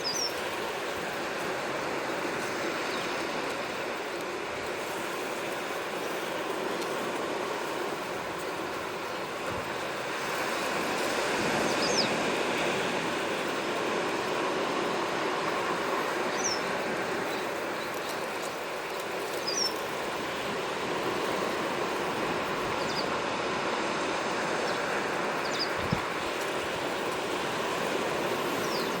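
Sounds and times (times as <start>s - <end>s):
waves washing on shore: 0.0s - 29.0s
small bird chirping: 16.3s - 16.7s, 19.4s - 19.8s.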